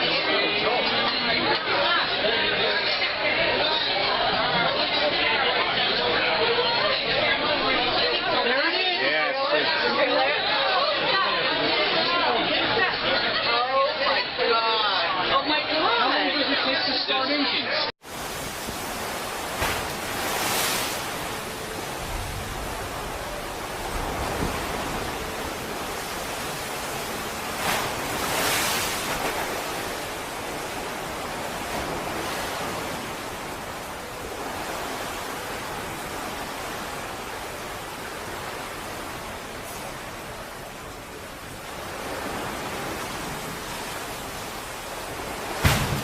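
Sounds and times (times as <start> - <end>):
rushing sea: 18.0 - 46.0
stormy wind: 18.0 - 46.0.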